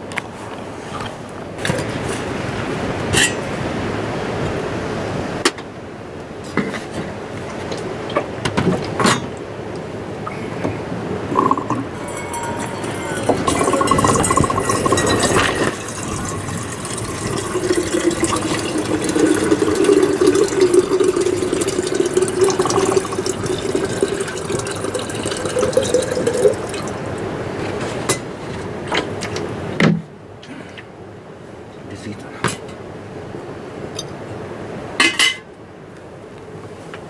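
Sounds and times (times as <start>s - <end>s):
utensils clinking: 11.2s - 29.5s
hot water pouring into a cup: 11.3s - 27.8s.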